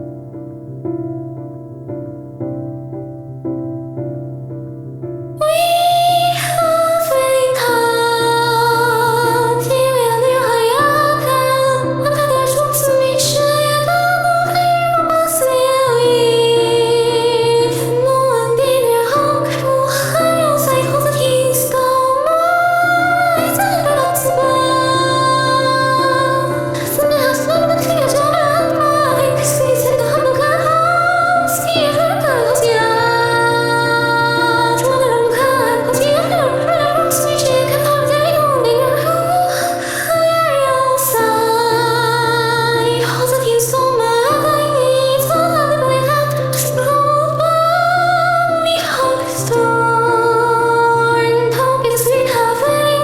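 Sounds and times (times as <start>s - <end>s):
woman singing: 5.4s - 53.0s.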